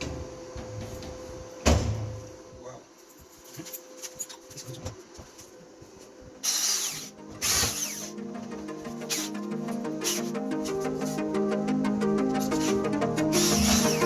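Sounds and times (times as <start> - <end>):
background music: 7.1 - 14.0
loud bursts of noise: 13.2 - 14.0.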